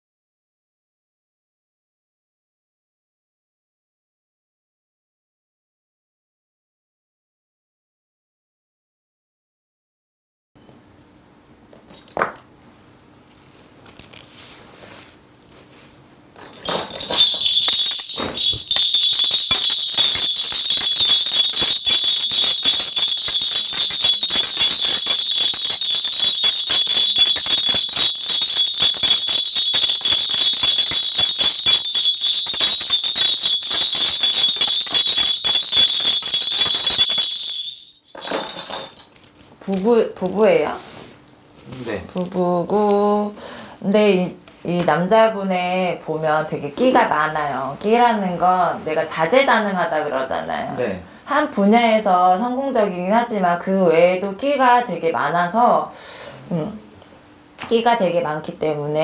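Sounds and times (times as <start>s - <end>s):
bell cluster jingling: 16.4s - 39.3s.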